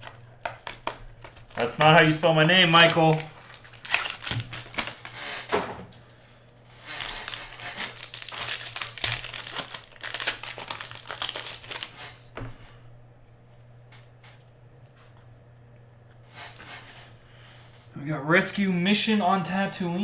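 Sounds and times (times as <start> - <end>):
card pack wrappers crinkling: 0.0 - 5.3, 6.8 - 12.2.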